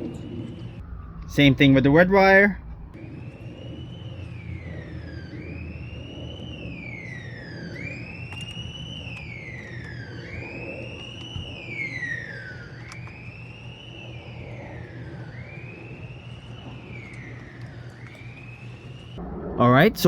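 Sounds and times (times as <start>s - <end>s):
emergency siren wailing: 0.0s - 20.0s
low steady hum: 0.0s - 20.0s.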